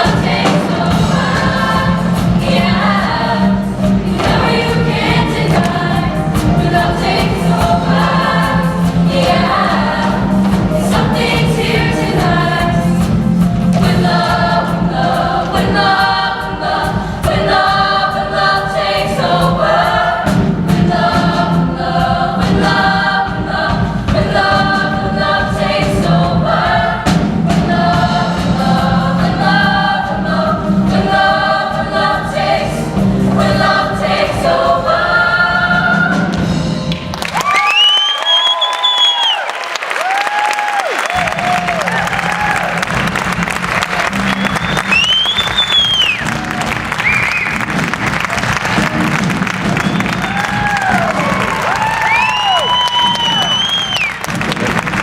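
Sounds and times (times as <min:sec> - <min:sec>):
choir singing with accompaniment: 0:00.0 - 0:37.2, 0:41.1 - 0:55.0
steady bass line: 0:41.2 - 0:53.5.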